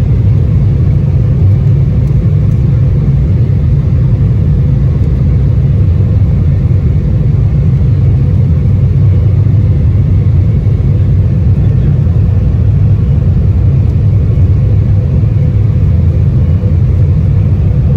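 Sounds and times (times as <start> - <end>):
jet cabin low rumble: 0.0 - 17.9.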